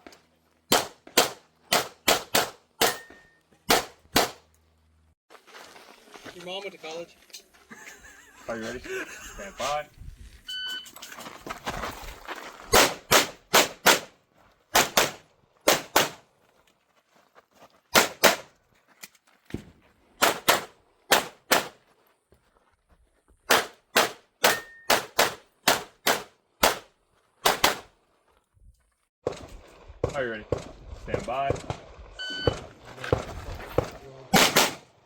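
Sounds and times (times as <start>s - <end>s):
pistol shots: 0.7s - 3.1s, 3.7s - 4.4s, 12.8s - 14.1s, 14.7s - 16.2s, 18.0s - 18.5s, 20.2s - 21.8s, 23.5s - 27.9s, 34.3s - 34.9s.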